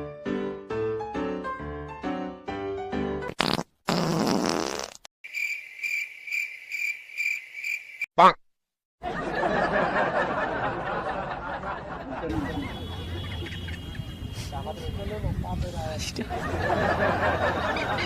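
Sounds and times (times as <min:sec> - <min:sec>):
wet fart sound effect: 0:03.3 - 0:05.1
cricket chirp effect: 0:05.2 - 0:08.1.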